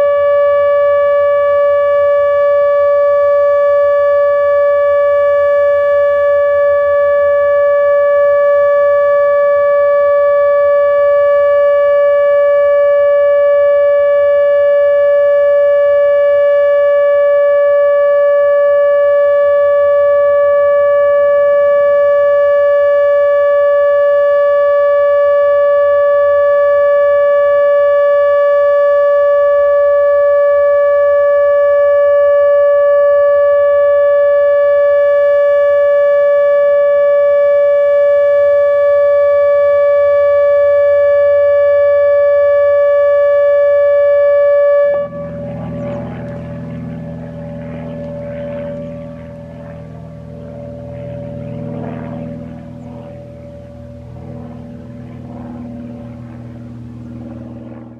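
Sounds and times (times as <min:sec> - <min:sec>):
electronic siren steady tone: 0:00.0 - 0:57.9.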